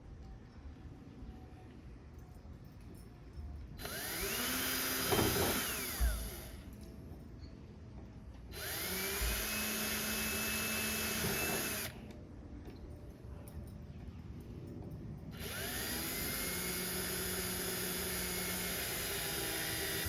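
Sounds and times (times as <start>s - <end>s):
power drill driving screws: 3.8s - 6.7s, 8.5s - 12.0s, 15.4s - 20.0s.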